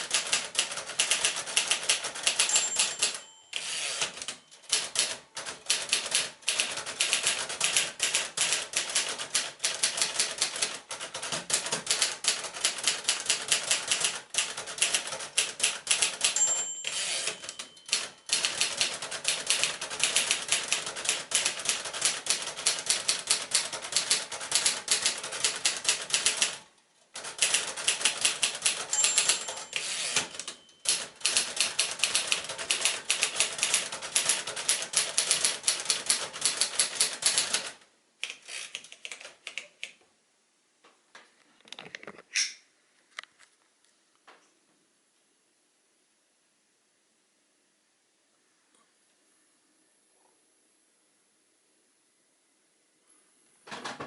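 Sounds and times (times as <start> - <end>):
typewriter clacking: 0.0 - 26.6, 27.2 - 39.7
typewriter margin bell: 0.0 - 26.6, 27.2 - 37.7.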